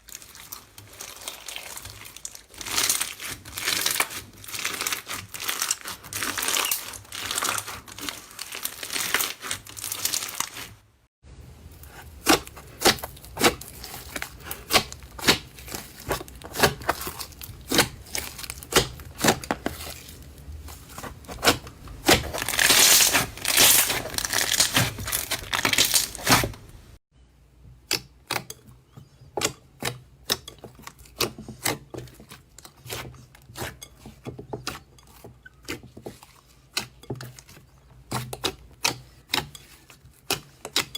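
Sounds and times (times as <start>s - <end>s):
slime crackling and popping: 0.0s - 10.8s, 11.9s - 26.7s.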